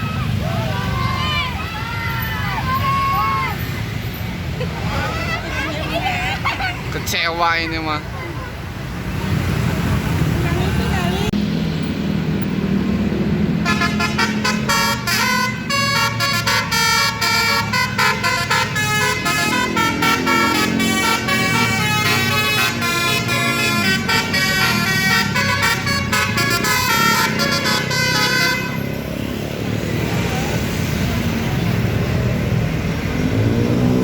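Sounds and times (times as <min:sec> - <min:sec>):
musical bus horn tune: 0:13.6 - 0:29.0.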